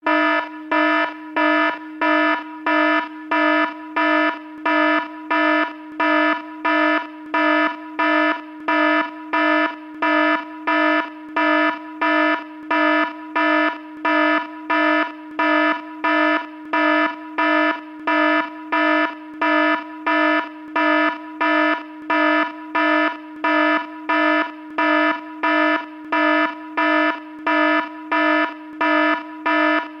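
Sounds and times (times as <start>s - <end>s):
electronic alarm buzzing: 0.0s - 30.0s.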